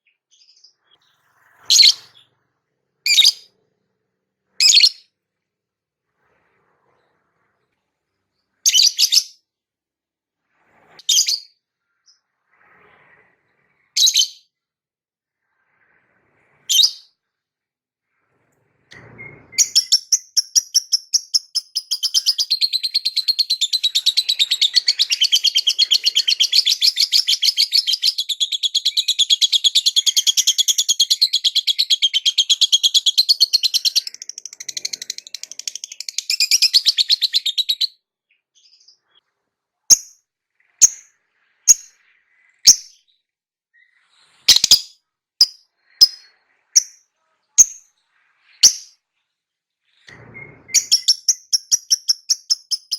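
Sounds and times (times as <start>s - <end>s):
bird sharp chirps: 0.0s - 2.3s, 3.1s - 3.5s, 4.6s - 5.1s, 8.6s - 9.4s, 14.0s - 14.5s, 19.0s - 39.3s, 39.9s - 49.0s, 49.9s - 52.9s.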